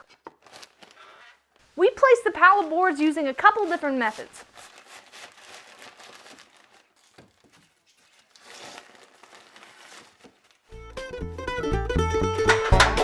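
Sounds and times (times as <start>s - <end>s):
banjo bluegrass music: 10.9s - 13.0s.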